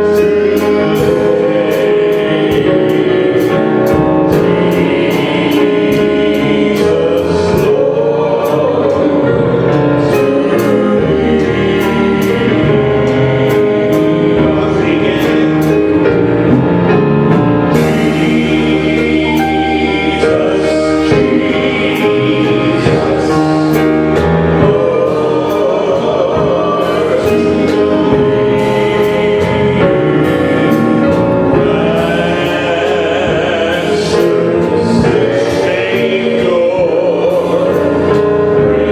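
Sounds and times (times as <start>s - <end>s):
group singing gospel song: 0.0s - 38.9s
instrumental accompaniment: 0.0s - 38.9s.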